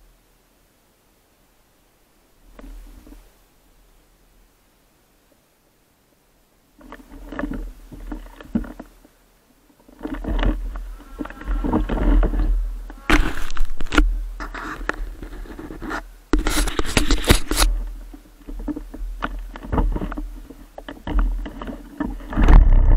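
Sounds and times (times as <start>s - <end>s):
wind rumble on microphone: 10.0s - 22.9s.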